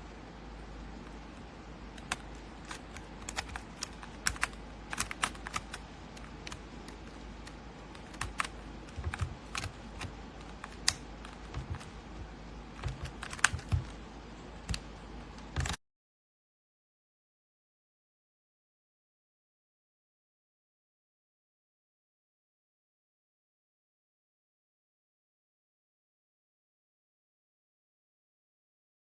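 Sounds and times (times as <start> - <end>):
steady low hum: 0.0 - 15.8
mechanical keyboard clicks: 2.0 - 14.0, 14.6 - 15.8.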